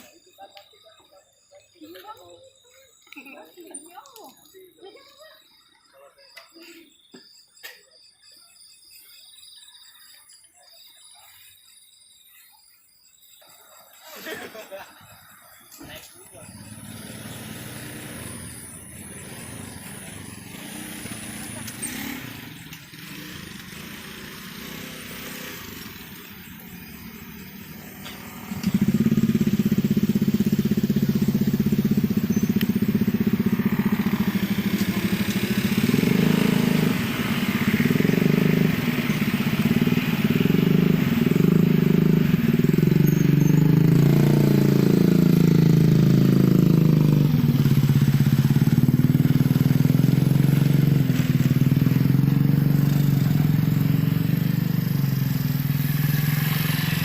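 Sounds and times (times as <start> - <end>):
motorcycle engine revving: 14.2 - 57.0.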